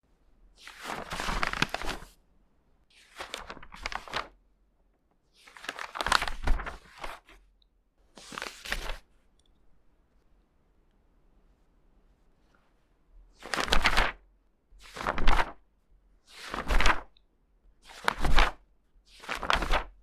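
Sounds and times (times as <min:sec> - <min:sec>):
magazine pages rustling: 0:00.6 - 0:02.2, 0:03.0 - 0:04.4, 0:05.4 - 0:07.3, 0:08.2 - 0:09.1, 0:13.4 - 0:14.2, 0:15.0 - 0:15.5, 0:16.5 - 0:17.1, 0:19.2 - 0:19.9.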